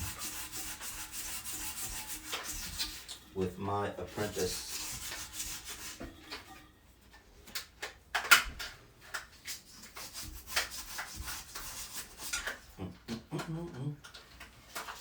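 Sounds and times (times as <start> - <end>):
sandpaper scraping ceramic: 0.0 - 3.2, 4.0 - 6.4, 9.4 - 12.7.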